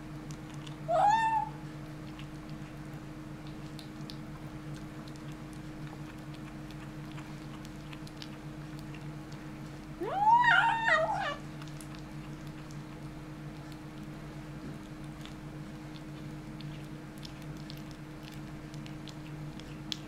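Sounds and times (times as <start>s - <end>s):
steady low hum: 0.0s - 20.0s
kitten meowing: 0.9s - 1.6s, 10.0s - 11.4s.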